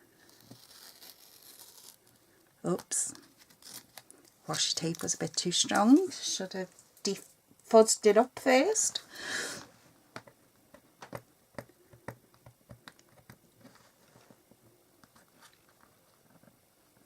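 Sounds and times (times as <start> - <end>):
card and paper clicks and taps: 10.2 - 13.4.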